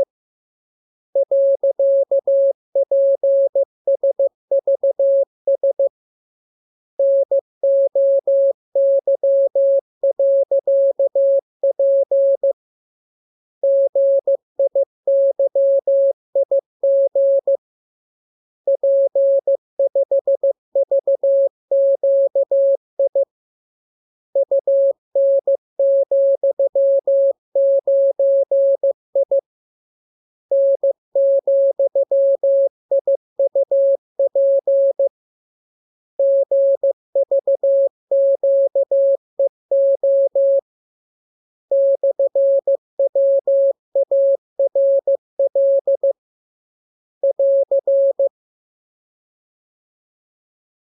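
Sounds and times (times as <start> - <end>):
morse code beeps: 41.7 - 46.2.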